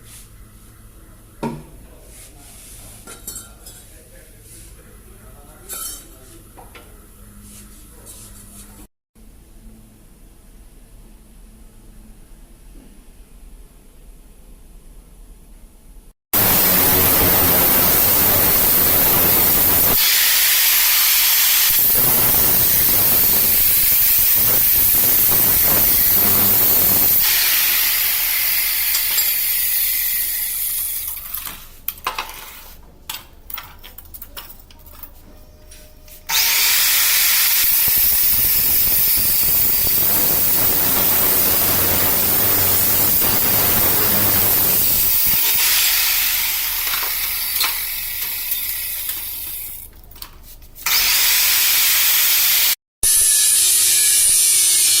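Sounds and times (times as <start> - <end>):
loud hissing of metalworking: 16.4 - 30.7, 36.3 - 49.0.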